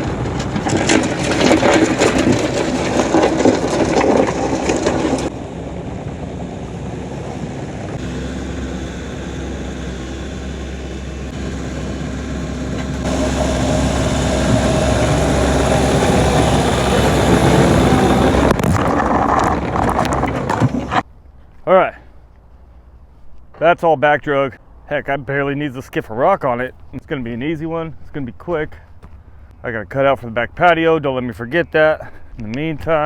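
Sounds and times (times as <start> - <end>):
excavator diesel engine under load: 0.0 - 21.0
hydraulics working: 0.0 - 21.0.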